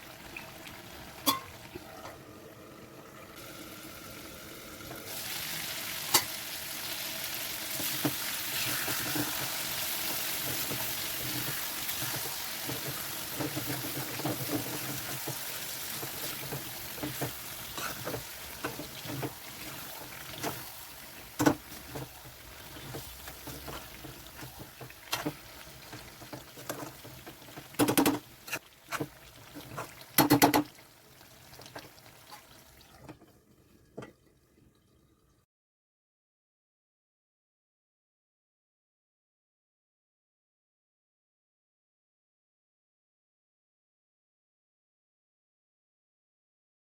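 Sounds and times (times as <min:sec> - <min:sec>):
food sizzling in a pan: 0:03.3 - 0:32.9
spoon knocking against pan: 0:30.2 - 0:30.7.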